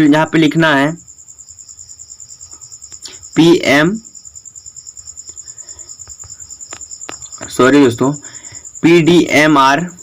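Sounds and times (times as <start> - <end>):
crickets chirping: 0.0 - 10.0
faint clicks: 2.5 - 3.2, 5.2 - 7.5.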